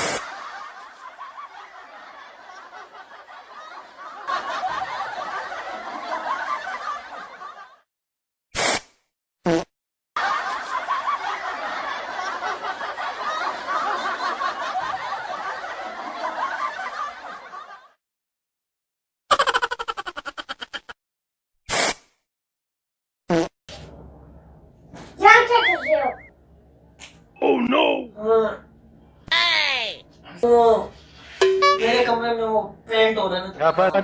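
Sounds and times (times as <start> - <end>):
stifled snickering laughter: 19.3 - 21.0.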